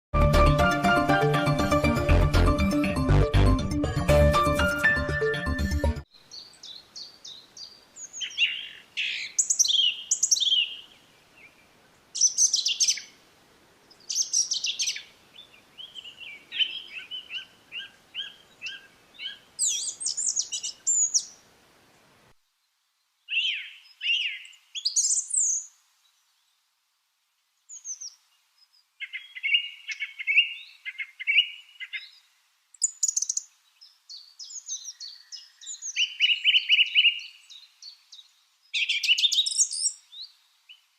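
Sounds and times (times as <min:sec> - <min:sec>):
lovebirds chirping: 0:06.1 - 0:13.2, 0:13.9 - 0:21.4, 0:22.6 - 0:26.6, 0:27.6 - 0:40.9.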